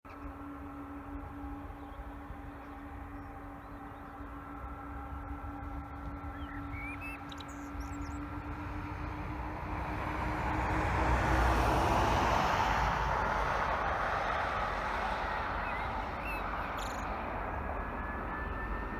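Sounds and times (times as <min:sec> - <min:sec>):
jet engines whining and rumbling: 0:00.1 - 0:18.9
faint bird chirps: 0:15.6 - 0:17.2.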